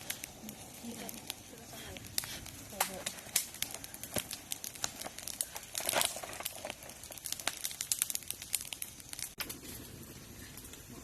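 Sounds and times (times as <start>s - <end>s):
crinkling and rustling: 0.0s - 7.9s.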